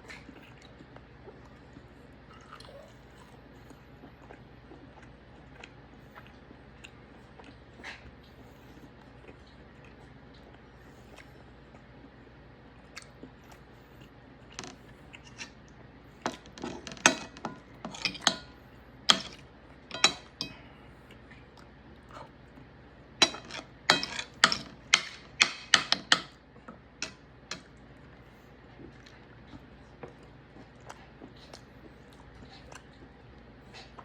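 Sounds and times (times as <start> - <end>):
knife and fork clinking on plate: 16.3 - 18.5, 19.1 - 20.6, 23.2 - 26.3.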